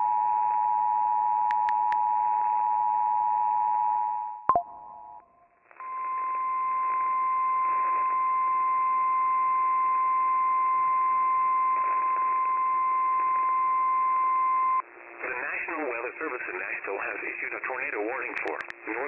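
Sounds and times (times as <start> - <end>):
faint radio hiss: 14.9 - 19.0.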